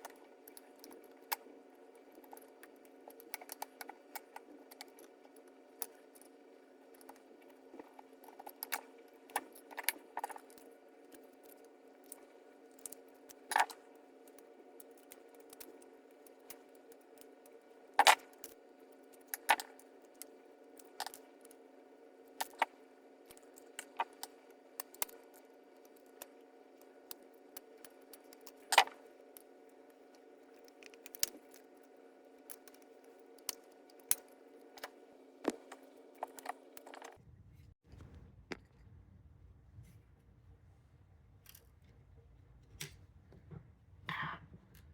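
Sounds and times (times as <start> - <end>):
plastic parts clicking and rattling: 32.5 - 37.2.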